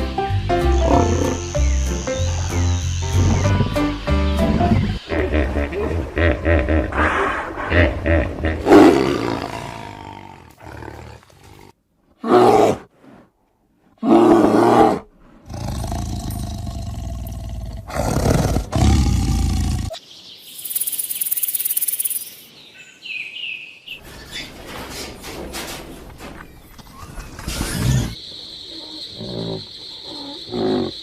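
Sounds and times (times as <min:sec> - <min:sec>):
big cats roaring and growling: 0:04.4 - 0:12.9, 0:14.0 - 0:20.0.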